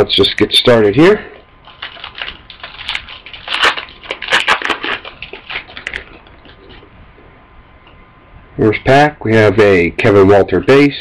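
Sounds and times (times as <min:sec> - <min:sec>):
card pack wrapper crinkling and tearing: 0:01.6 - 0:06.8.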